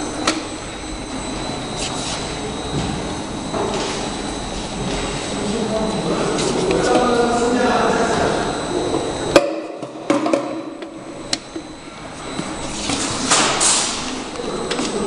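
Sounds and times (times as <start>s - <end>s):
steady machine hum: 0.0s - 15.0s.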